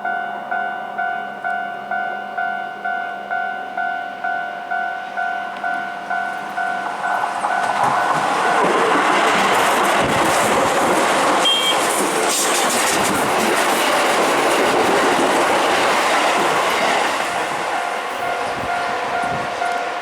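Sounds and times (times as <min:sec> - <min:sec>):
level crossing warning bell: 0:00.0 - 0:09.5, 0:15.5 - 0:20.0
electric train passing: 0:00.0 - 0:20.0.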